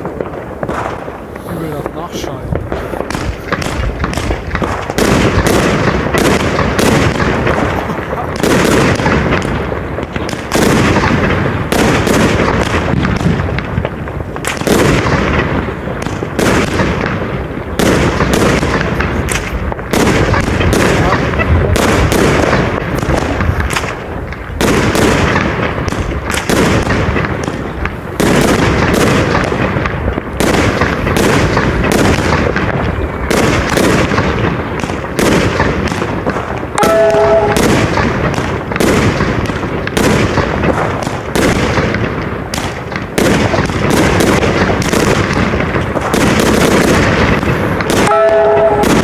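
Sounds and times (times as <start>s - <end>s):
fireworks bangs: 0.0s - 49.0s
brief pitched tone: 36.8s - 37.6s.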